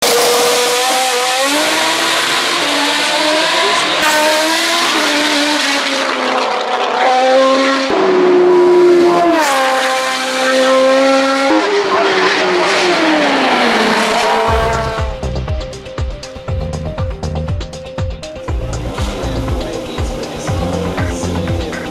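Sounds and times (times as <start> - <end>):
race car engine revving: 0.0 - 15.4, 18.5 - 21.9
music with steady beat: 14.5 - 21.9.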